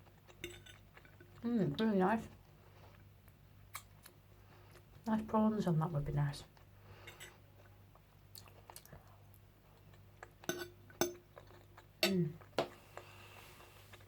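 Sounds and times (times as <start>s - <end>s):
cutlery clinking on a plate: 10.5s - 11.2s.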